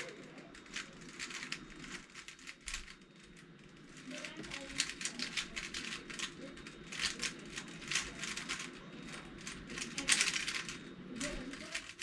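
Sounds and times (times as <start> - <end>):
puzzle cube plastic clicks: 0.0 - 12.0.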